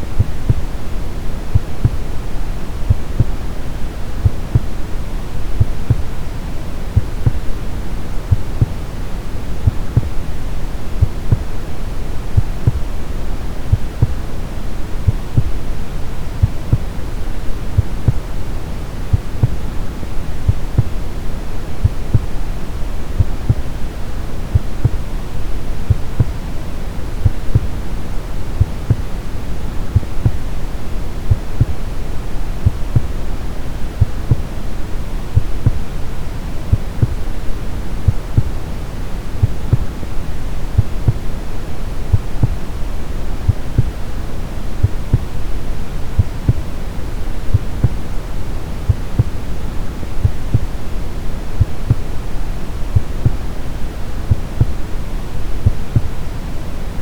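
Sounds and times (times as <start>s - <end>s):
heartbeat: 0.0s - 0.8s, 1.5s - 2.2s, 2.8s - 3.5s, 4.2s - 4.8s, 5.6s - 6.1s, 7.0s - 7.6s, 8.3s - 8.8s, 9.6s - 10.3s, 11.0s - 13.0s, 13.7s - 14.3s, 15.0s - 15.7s, 16.4s - 18.4s, 19.1s - 19.8s, 20.4s - 21.0s, 21.8s - 22.4s, 23.1s - 23.8s, 24.5s - 25.1s, 25.9s - 26.4s, 27.2s - 27.8s, 28.6s - 29.1s, 29.9s - 30.5s, 31.3s - 31.9s, 32.6s - 33.2s, 34.0s - 34.5s, 35.4s - 35.9s, 36.7s - 37.3s, 38.0s - 38.6s, 39.4s - 40.0s, 40.7s - 41.3s, 42.1s - 42.6s, 43.5s - 44.0s, 44.8s - 45.4s, 46.2s - 46.7s, 47.4s - 48.1s, 48.9s - 49.5s, 50.2s - 50.8s, 51.6s - 52.1s, 52.9s - 53.5s, 54.2s - 54.8s, 55.6s - 56.2s
brown noise hiss: 0.0s - 57.0s.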